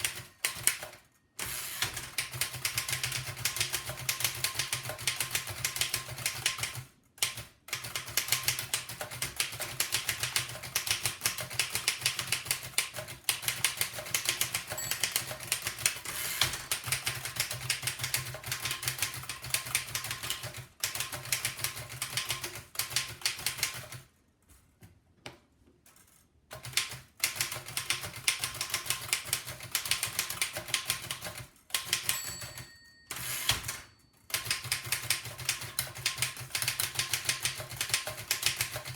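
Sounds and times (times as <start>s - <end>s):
typewriter typing: 0.0s - 24.1s, 26.5s - 38.9s
typewriter bell ringing: 14.5s - 17.3s, 31.8s - 35.0s.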